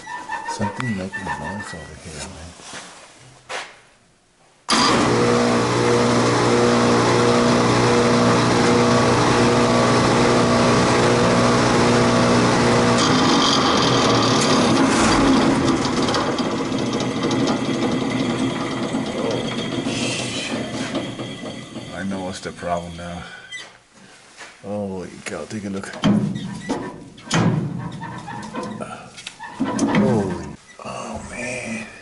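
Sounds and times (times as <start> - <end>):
hvac blower hum: 4.7 - 23.4
rough mechanical noise: 4.7 - 23.7.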